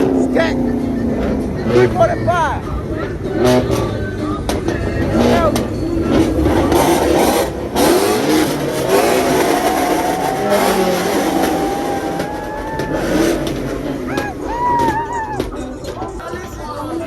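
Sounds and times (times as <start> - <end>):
car engines revving: 0.0 - 17.0.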